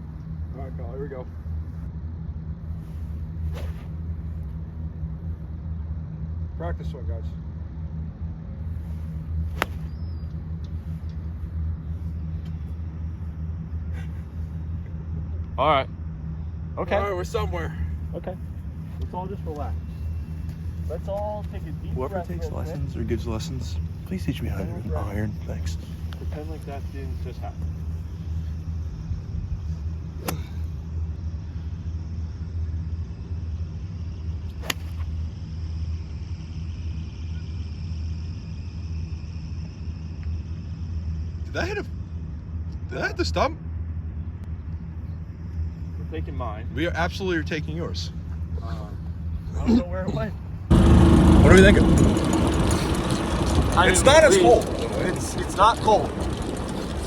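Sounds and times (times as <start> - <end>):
steady low rumble: 0.0 - 57.0
golf club striking ball: 9.5 - 10.0, 30.2 - 30.7, 34.6 - 35.0
low rumble: 50.6 - 57.0.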